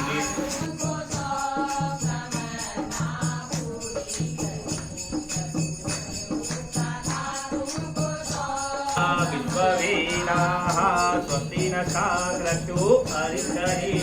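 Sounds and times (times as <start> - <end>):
person singing: 0.0 - 0.8, 9.0 - 14.0
jingling percussion: 0.0 - 14.0
devotional music with steady beat: 5.1 - 14.0.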